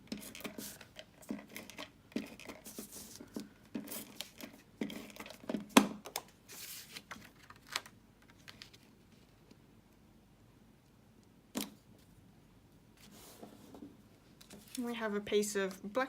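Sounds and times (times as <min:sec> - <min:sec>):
paper rustling and tearing: 0:06.5 - 0:08.9.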